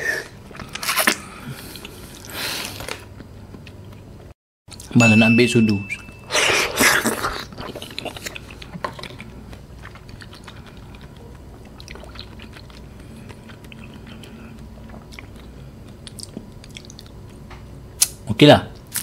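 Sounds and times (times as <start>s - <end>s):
person chewing: 6.3s - 17.4s.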